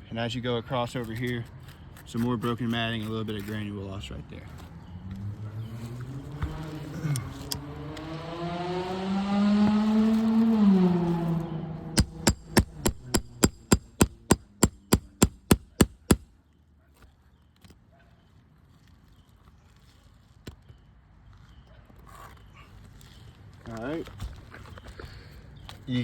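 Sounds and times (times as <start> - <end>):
engine revving: 5.3 - 13.3
hammer striking metal: 12.0 - 16.2.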